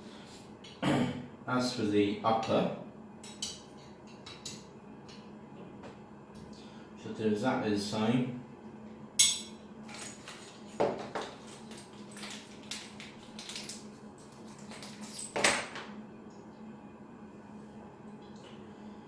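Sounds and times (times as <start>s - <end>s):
faint steady hum: 0.0s - 19.0s
metal parts clicking and clinking: 9.2s - 15.8s.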